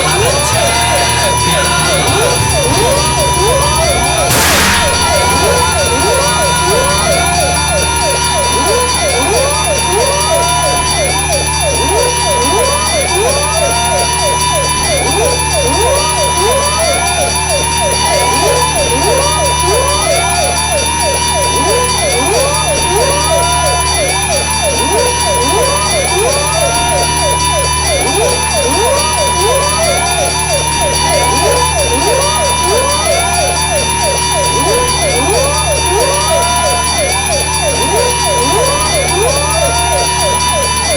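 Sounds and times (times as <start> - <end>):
steady low buzz of fast drums: 0.0 - 8.0
rising synthetic pitch sweeps: 0.0 - 13.9.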